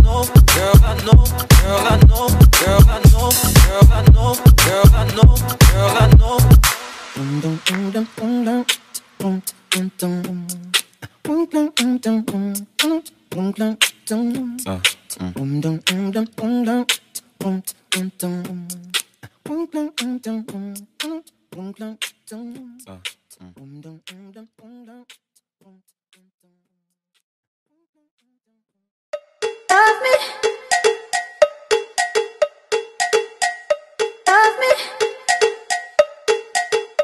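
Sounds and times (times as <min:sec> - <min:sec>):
sharp rapid percussive clicks: 0:00.0 - 0:06.9, 0:18.8 - 0:19.2, 0:35.1 - 0:37.0
song with sung vocal: 0:00.0 - 0:25.8, 0:29.7 - 0:30.8, 0:34.3 - 0:36.0.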